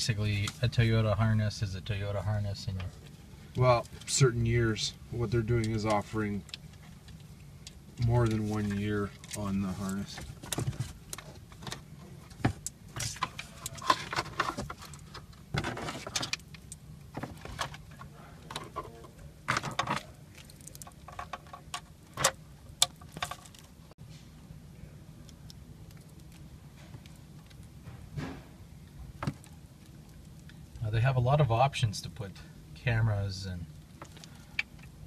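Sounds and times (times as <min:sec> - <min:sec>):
wires rustling: 0:02.6 - 0:24.0.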